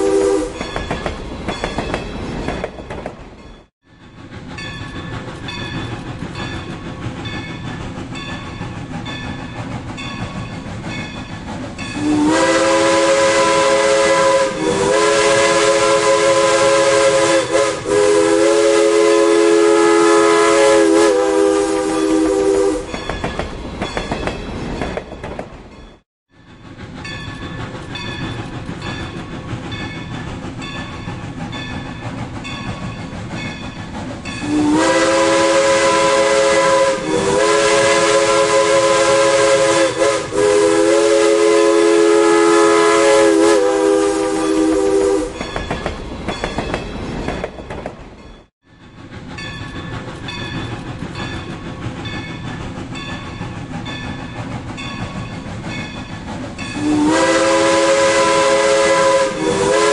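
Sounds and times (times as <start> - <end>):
locomotive chime whistle: 0.0 - 1.9, 11.8 - 24.2, 34.3 - 46.7, 56.6 - 59.9
steam locomotive rhythmic clatter: 0.0 - 59.9.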